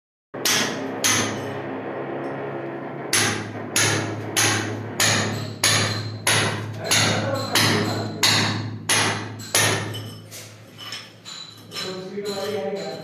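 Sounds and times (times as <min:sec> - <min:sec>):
hammer striking hard surface: 0:00.4 - 0:01.6, 0:03.0 - 0:10.2
steady low hum: 0:00.4 - 0:10.8.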